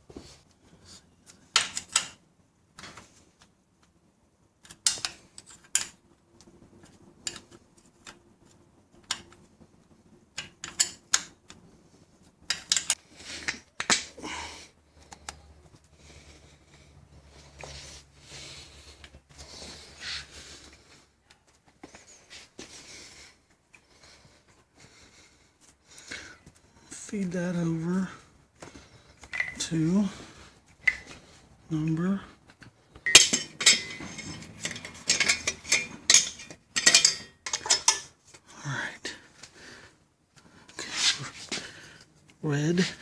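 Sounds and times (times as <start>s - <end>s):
rubbing scrapes: 40.8s - 41.5s.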